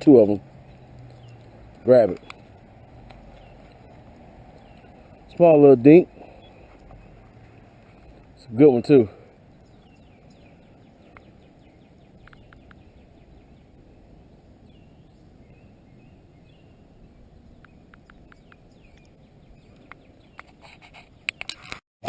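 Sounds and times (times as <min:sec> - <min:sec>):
distant birds chirping: 0:00.0 - 0:21.8
low steady outdoor noise: 0:00.0 - 0:21.8
light clicks: 0:00.6 - 0:03.8, 0:12.2 - 0:12.8.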